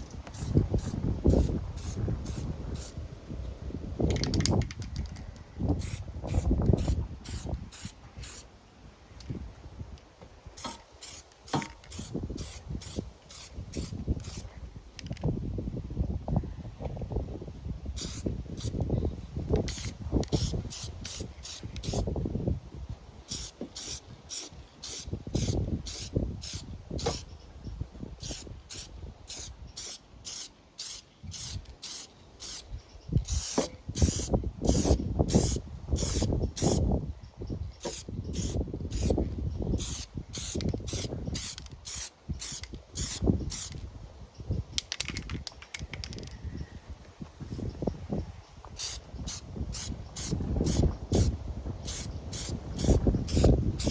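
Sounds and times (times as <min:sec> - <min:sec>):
wind buffeting microphone: 0:00.0 - 0:30.4, 0:31.2 - 0:53.9
spray paint can hissing: 0:00.3 - 0:03.0, 0:05.8 - 0:08.5, 0:10.6 - 0:14.5, 0:17.9 - 0:18.8, 0:19.6 - 0:22.1, 0:23.3 - 0:27.3, 0:28.2 - 0:36.8, 0:37.8 - 0:39.2, 0:39.8 - 0:43.8, 0:48.7 - 0:53.9.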